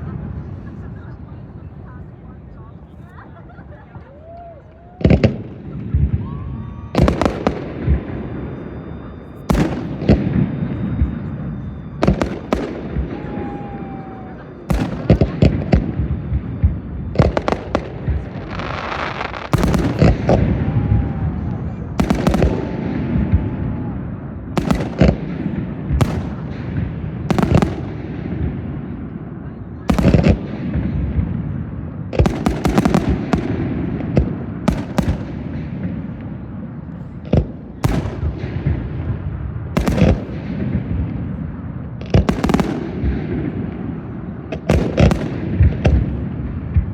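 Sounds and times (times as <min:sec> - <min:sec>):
fireworks bangs: 0:03.5 - 0:46.9
low rumbling echoes: 0:04.2 - 0:46.9.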